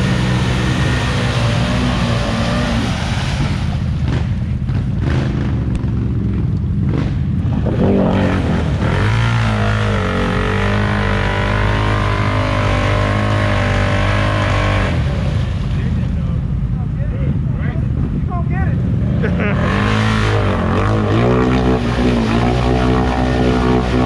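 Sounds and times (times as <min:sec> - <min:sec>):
off-road vehicle engine: 0:00.0 - 0:24.0.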